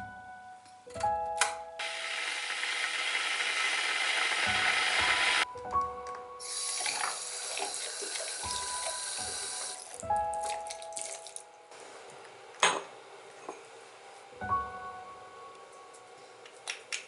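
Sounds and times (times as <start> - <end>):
water running from a tap: 6.4 - 11.4.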